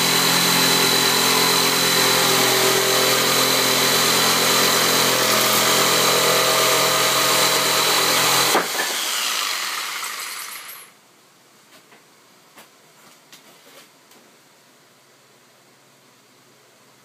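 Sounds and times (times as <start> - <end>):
power tool motor running: 0.0 - 10.9.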